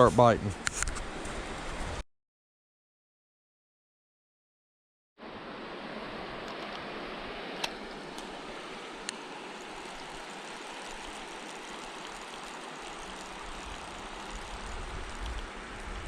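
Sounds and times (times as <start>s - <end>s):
creek water running over rocks: 5.6s - 16.0s.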